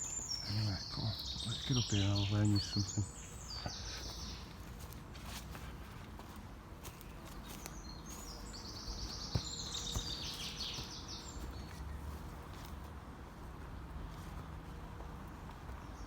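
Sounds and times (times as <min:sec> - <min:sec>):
footsteps thudding: 0:08.8 - 0:11.0.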